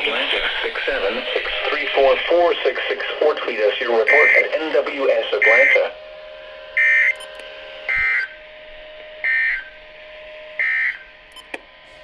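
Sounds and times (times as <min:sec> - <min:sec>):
screeching digital data bursts: 0:06.8 - 0:08.4, 0:09.2 - 0:09.7.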